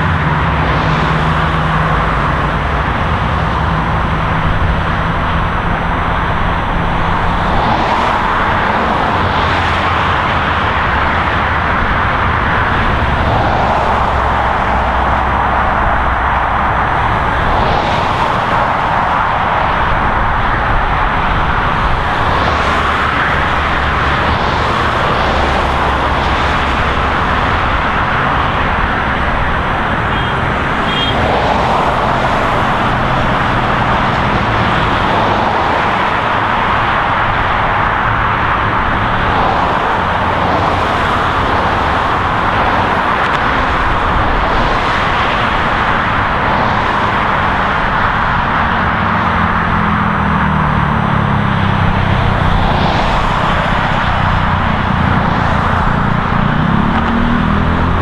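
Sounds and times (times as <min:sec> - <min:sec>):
highway traffic passing: 0:00.0 - 0:58.0.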